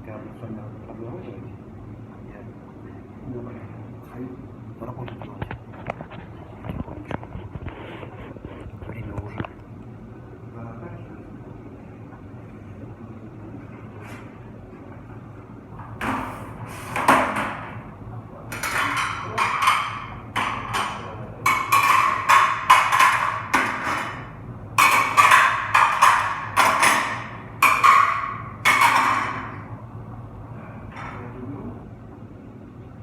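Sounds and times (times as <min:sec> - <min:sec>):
dishes clattering and clinking: 0:15.8 - 0:17.8, 0:18.5 - 0:29.7, 0:30.9 - 0:31.3.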